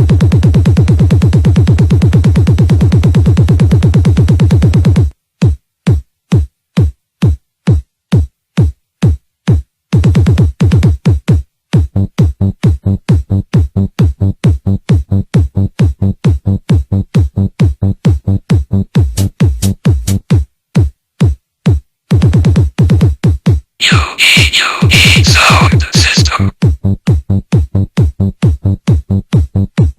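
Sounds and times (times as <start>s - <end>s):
bassy kick drum: 0.0s - 20.9s, 24.8s - 29.9s
electronic dance music: 23.8s - 26.5s.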